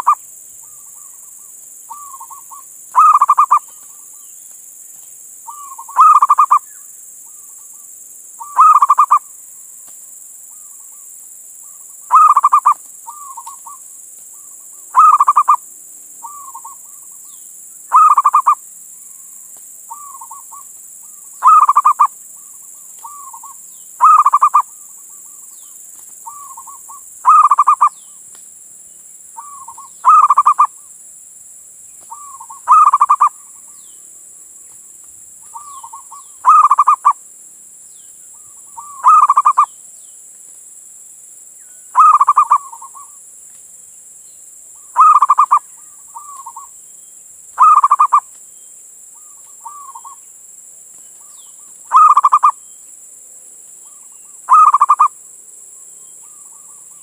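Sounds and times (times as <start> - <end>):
steady high hiss: 0.0 - 57.0
dove cooing: 1.9 - 4.1, 5.5 - 6.6, 8.4 - 9.3, 12.1 - 13.8, 14.9 - 15.6, 17.9 - 18.6, 21.4 - 22.1, 23.0 - 25.4, 26.3 - 28.0, 29.4 - 30.8, 32.1 - 33.4, 35.5 - 37.2, 38.4 - 39.7, 42.0 - 43.2, 45.0 - 46.7, 47.6 - 48.3, 51.9 - 52.6, 54.5 - 55.1.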